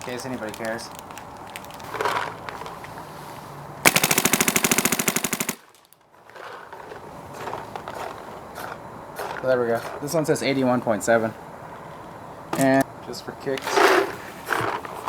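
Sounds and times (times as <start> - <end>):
paintball marker firing shots: 3.9 - 5.7.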